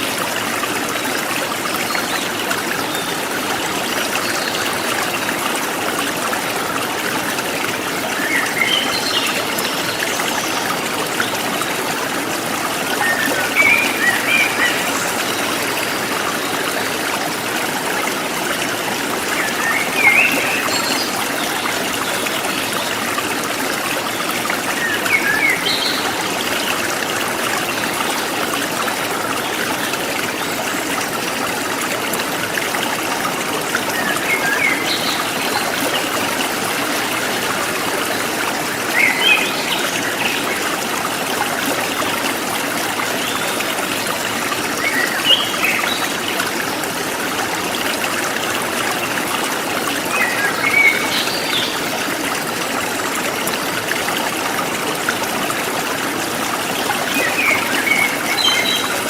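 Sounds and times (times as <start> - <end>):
stream flowing over rocks: 0.0 - 59.0.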